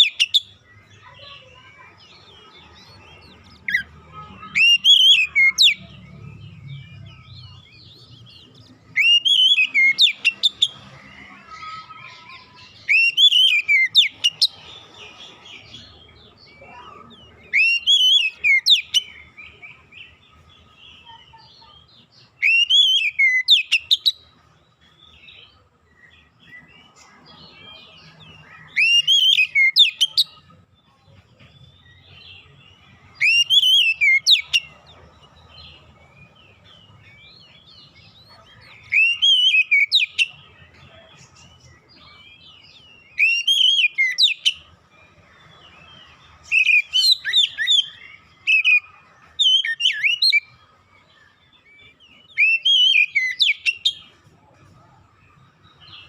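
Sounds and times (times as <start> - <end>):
bird whistled song: 0.0 - 1.3, 2.6 - 10.9, 11.6 - 14.6, 17.4 - 24.3, 28.0 - 30.5, 31.6 - 34.8, 35.6 - 44.7, 45.4 - 54.2.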